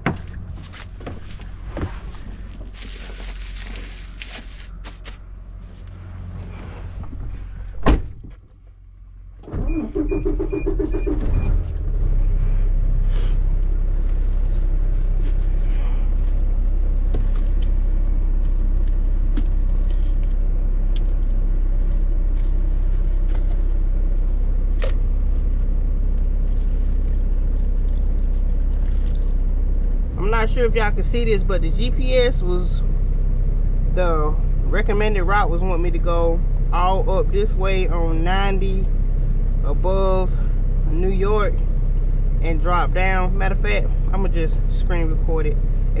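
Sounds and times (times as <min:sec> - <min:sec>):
truck diesel engine cranking and idling: 0:00.0 - 0:46.0
dashboard warning beeps: 0:09.6 - 0:11.6.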